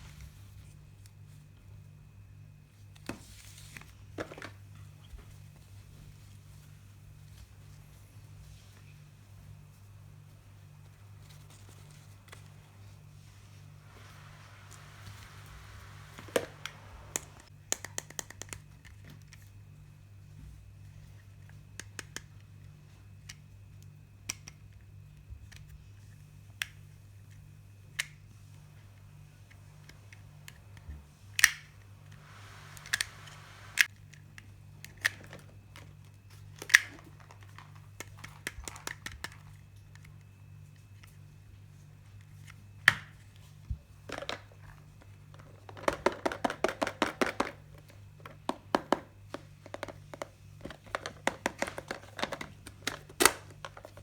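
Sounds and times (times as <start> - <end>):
low steady hum: 0.0 - 17.7, 18.8 - 54.0
plastic pieces clicking and tapping: 44.1 - 54.0.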